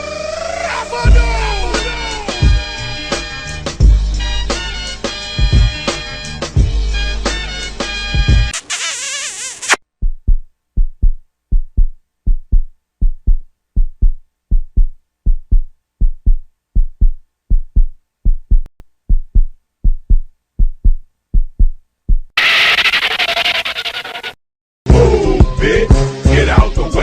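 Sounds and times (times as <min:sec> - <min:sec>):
heartbeat thumps: 0:05.4 - 0:05.8, 0:10.0 - 0:22.4.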